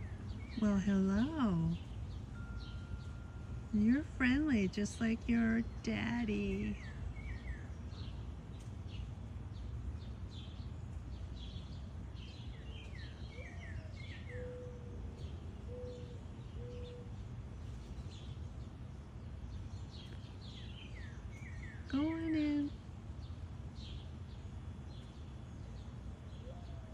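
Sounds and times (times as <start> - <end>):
steady low rumble: 0.0 - 12.6
songbirds chirping: 0.0 - 26.9.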